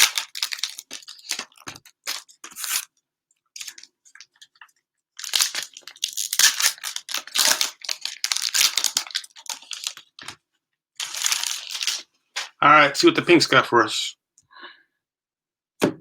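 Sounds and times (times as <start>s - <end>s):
plastic wrappers crinkling and tearing: 0.0s - 2.9s, 3.6s - 10.4s, 11.0s - 12.0s.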